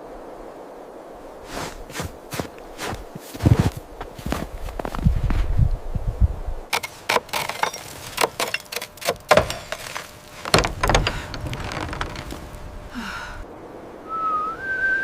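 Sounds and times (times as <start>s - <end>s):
clatter of sharp knocks: 6.7s - 12.5s.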